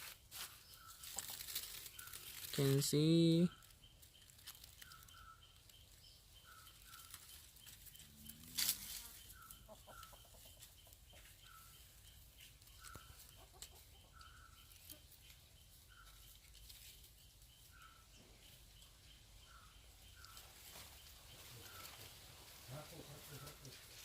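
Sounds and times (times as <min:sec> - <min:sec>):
chickens clucking: 0:00.9 - 0:01.9, 0:06.7 - 0:16.6, 0:20.1 - 0:23.9
loud rustle: 0:07.0 - 0:09.3.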